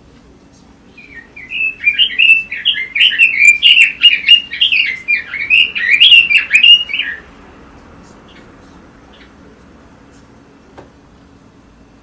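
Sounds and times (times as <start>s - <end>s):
bird warbling song: 0.9s - 7.3s.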